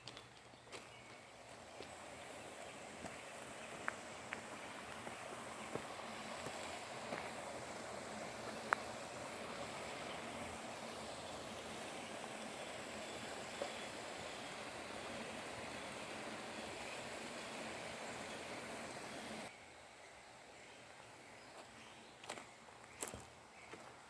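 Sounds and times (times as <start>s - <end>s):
campfire crackling: 1.5s - 19.5s.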